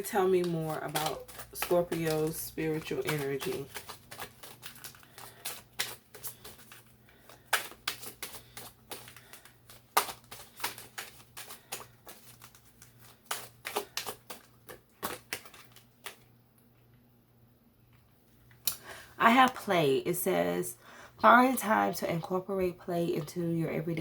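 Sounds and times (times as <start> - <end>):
cards being shuffled by hand: 0.0 - 16.3.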